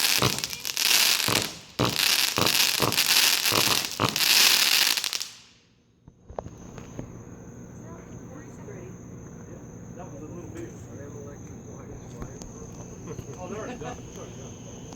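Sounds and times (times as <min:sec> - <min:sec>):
fireworks sharp shots: 0:00.0 - 0:05.6
fireworks crackle: 0:00.0 - 0:07.2.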